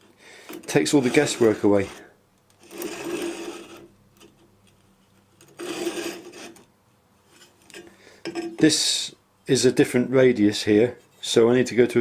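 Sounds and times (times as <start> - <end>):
knife handle rasping on grinder belt: 5.6 - 6.6.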